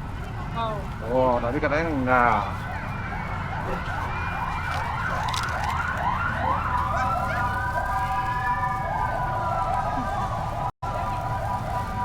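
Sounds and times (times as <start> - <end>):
electronic siren: 2.4 - 12.0.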